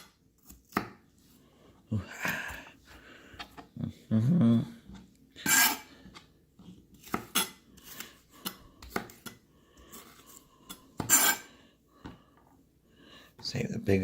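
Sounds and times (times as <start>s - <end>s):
knife scraping swishes: 5.4s - 5.9s, 11.0s - 11.5s.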